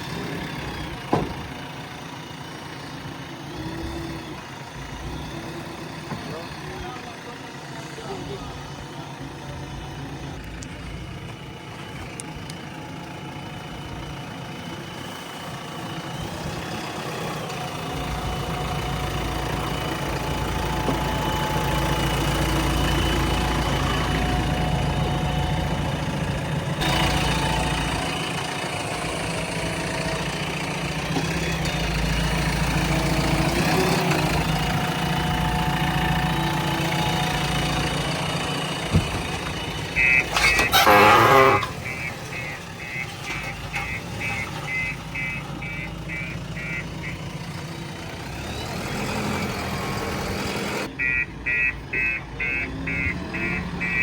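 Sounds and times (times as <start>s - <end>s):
diesel engine running: 0.0s - 54.0s.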